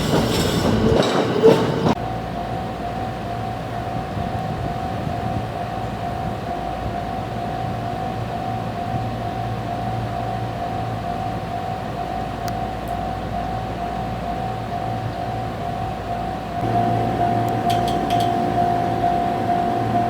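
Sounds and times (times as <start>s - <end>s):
electric train humming: 0.0s - 20.0s
level crossing bell ringing: 16.3s - 20.0s.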